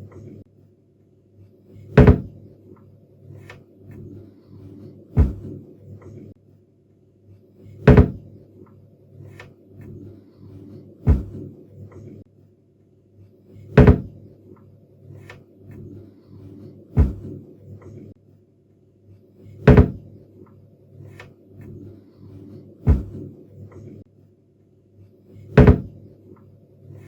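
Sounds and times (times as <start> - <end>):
cabinet door shutting: 2.0 - 2.3, 5.2 - 5.5, 7.9 - 8.2, 11.1 - 11.4, 13.8 - 14.1, 17.0 - 17.3, 19.7 - 20.0, 22.9 - 23.2, 25.6 - 25.9
door clicks and knocks: 7.9 - 8.2, 13.8 - 14.1.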